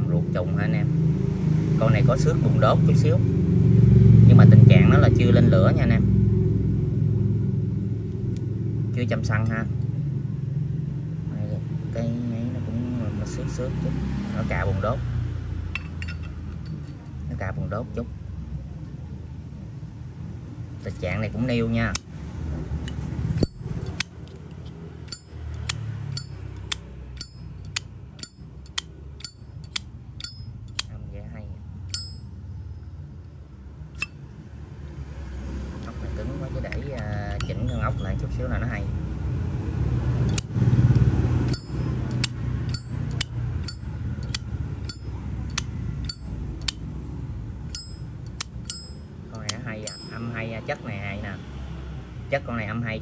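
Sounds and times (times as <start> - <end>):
lighter lid clicking open and shut: 23.4 - 30.9, 40.3 - 40.5, 41.5 - 46.8
lighter lid clicking: 41.5 - 46.8.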